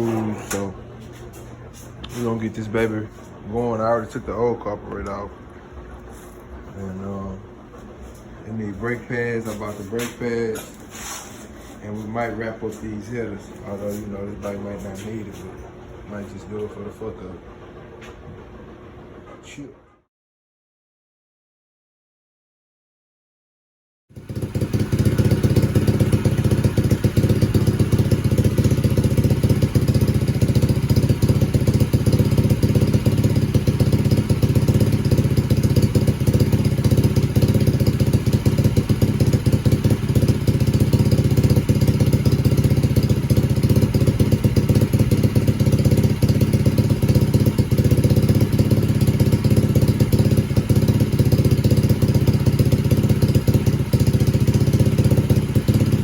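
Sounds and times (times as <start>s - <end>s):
dirt bike engine running: 0.0s - 10.8s, 24.1s - 56.0s.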